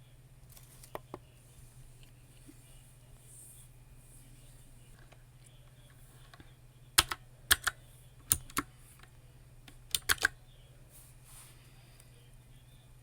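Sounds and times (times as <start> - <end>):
computer keyboard typing: 7.0 - 8.7, 9.7 - 10.4.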